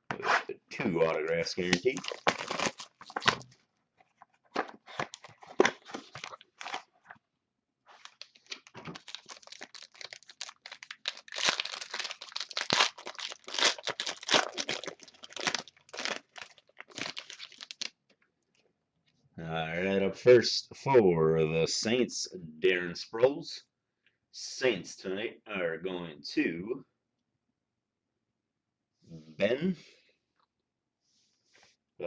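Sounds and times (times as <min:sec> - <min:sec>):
plastic wrapper crinkling and tearing: 0:01.6 - 0:07.2, 0:07.9 - 0:18.0.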